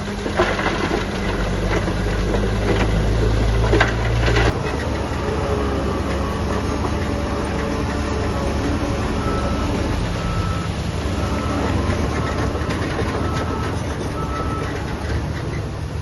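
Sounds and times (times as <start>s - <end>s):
diesel engine running: 0.0s - 16.0s
reversing alarm beeping: 5.8s - 14.8s.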